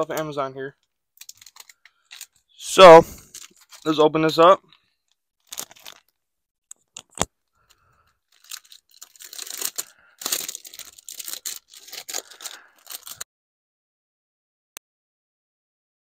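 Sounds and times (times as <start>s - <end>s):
packaging ripping and crinkling: 1.2s - 2.4s, 3.2s - 4.0s, 5.4s - 6.1s, 7.0s - 13.2s.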